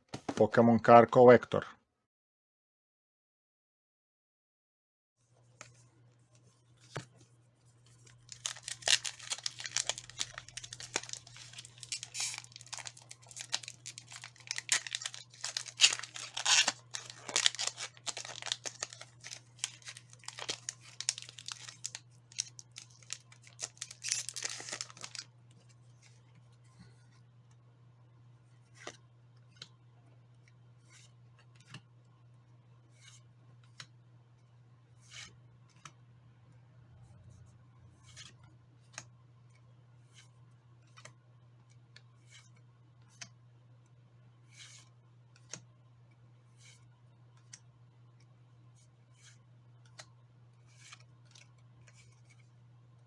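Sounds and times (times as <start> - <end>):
low steady hum: 5.4 - 53.0
card packaging tearing and crinkling: 8.0 - 25.3.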